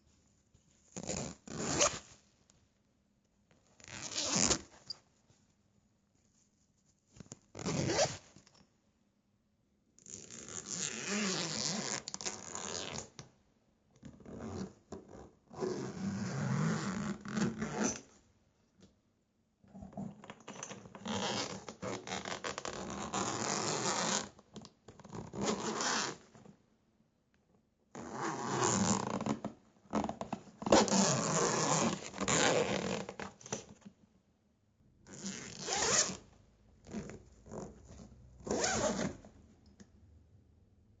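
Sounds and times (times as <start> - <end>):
zipper being pulled: 1.0 - 2.1, 3.8 - 4.8, 7.6 - 8.3, 10.0 - 13.1, 14.2 - 18.1, 21.0 - 24.4, 25.0 - 26.2, 28.0 - 33.6, 35.1 - 39.3.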